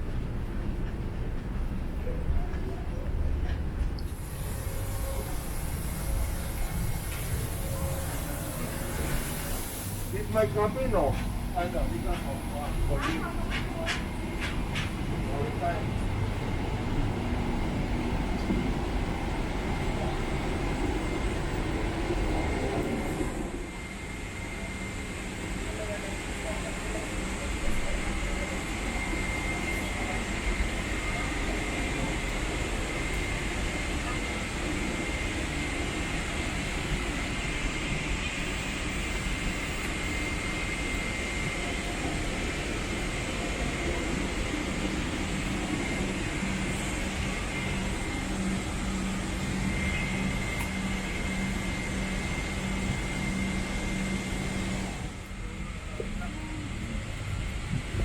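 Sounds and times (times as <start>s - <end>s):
airliner cabin drone: 0.0s - 58.0s
faint high whine: 36.1s - 57.9s.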